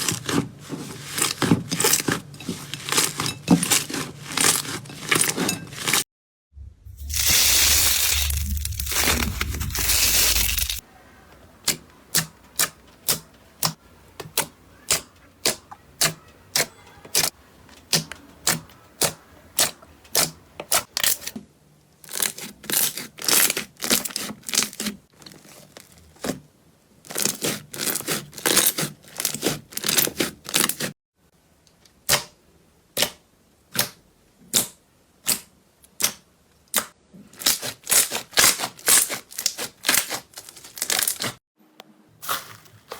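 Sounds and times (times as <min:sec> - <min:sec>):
slime crunching: 0:06.8 - 0:10.8, 0:22.0 - 0:30.9, 0:37.4 - 0:41.4.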